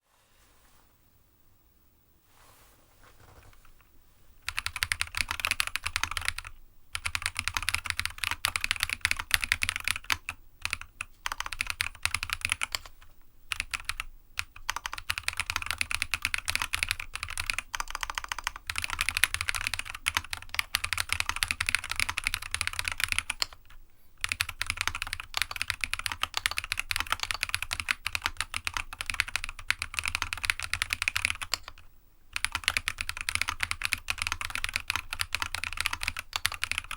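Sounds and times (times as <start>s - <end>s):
mechanical keyboard typing: 4.4s - 36.9s.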